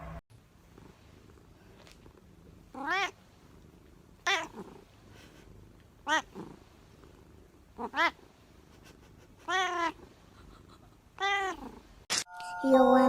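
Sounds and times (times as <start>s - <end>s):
cat meowing: 9.4s - 10.0s, 11.2s - 11.7s.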